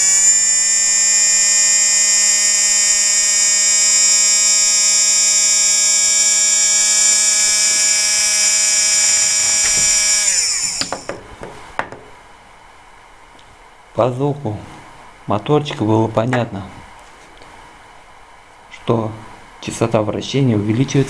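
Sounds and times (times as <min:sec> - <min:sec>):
small electric motor whining: 0:00.0 - 0:11.2.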